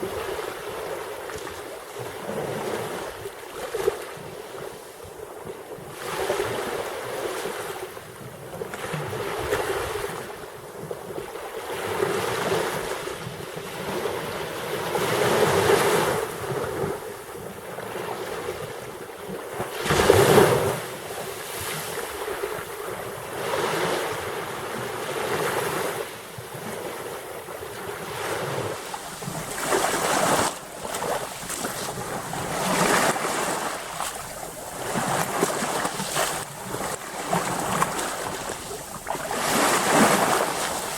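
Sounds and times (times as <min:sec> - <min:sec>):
waves breaking: 0:19.5 - 0:40.9.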